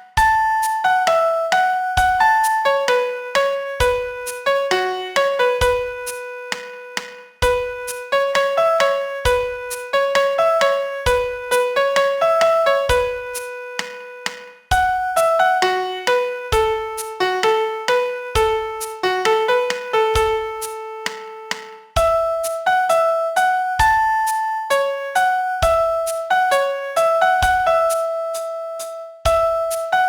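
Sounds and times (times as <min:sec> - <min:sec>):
slow piano melody: 0:00.0 - 0:30.0.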